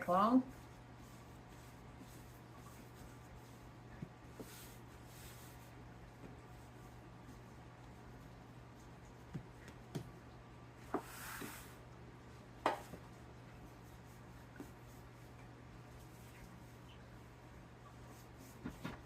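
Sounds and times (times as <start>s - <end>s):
soft rustle: 0.0s - 19.0s
steady low hum: 0.0s - 19.0s.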